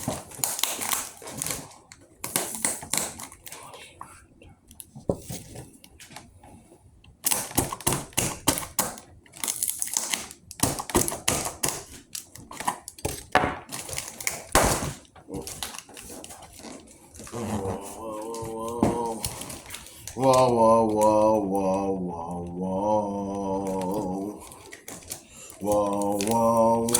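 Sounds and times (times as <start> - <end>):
packaging being cut and torn open: 0.0 - 3.6, 7.2 - 21.1, 23.6 - 26.9
plastic and cardboard crackling: 0.0 - 3.8, 7.2 - 26.9.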